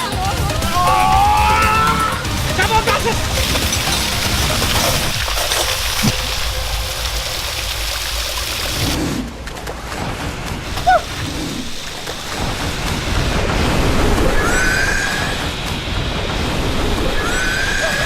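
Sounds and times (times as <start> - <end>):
waterfall rushing: 0.0 - 18.0
gliding whistle-like tones: 14.1 - 18.0.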